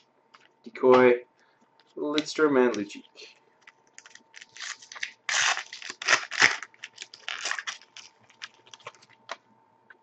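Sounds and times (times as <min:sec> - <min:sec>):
wrappers crinkling: 0:03.6 - 0:09.4.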